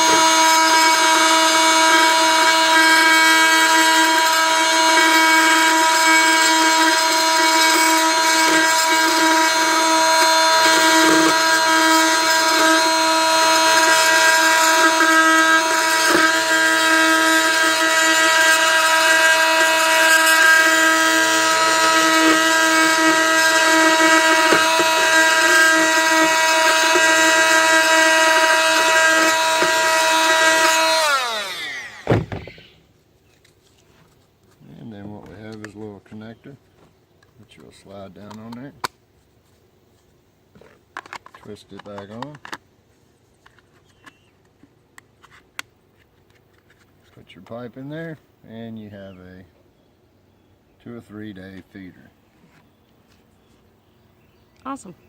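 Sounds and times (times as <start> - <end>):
power saw grinding plastic: 0.0 - 32.8.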